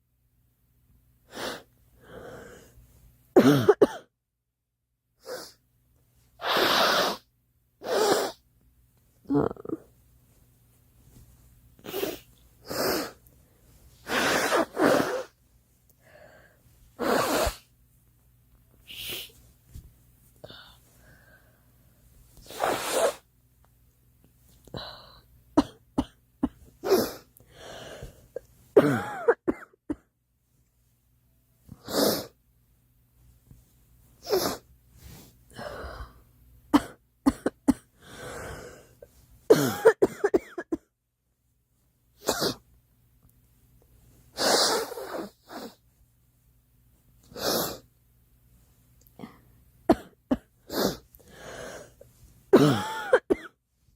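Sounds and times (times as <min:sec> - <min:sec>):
girl coughing: 0:03.4 - 0:04.1, 0:28.8 - 0:30.0, 0:36.7 - 0:37.9, 0:39.5 - 0:40.8, 0:42.2 - 0:42.6, 0:49.9 - 0:51.0, 0:52.5 - 0:53.6.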